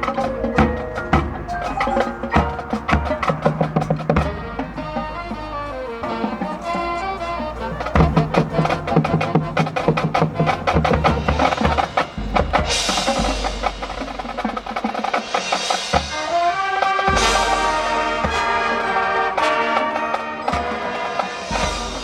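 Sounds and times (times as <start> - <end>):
mallet percussion notes: 0.0 - 22.0
rapid drum strokes: 0.0 - 22.0
wind instruments playing: 0.0 - 22.0
cymbal crashes: 10.7 - 20.7.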